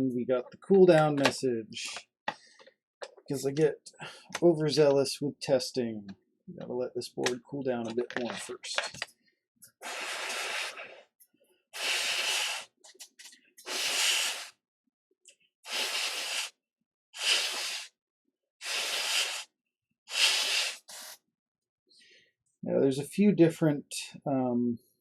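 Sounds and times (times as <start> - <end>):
short bursts of blown air: 9.8 - 11.0, 11.8 - 12.8, 13.6 - 14.6, 15.7 - 16.6, 17.2 - 18.0, 18.6 - 19.5, 20.1 - 21.2.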